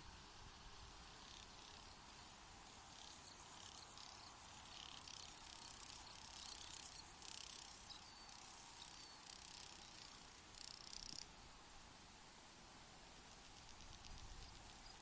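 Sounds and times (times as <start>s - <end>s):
high insect chirring: 1.2s - 2.0s, 2.6s - 11.3s, 13.4s - 15.0s.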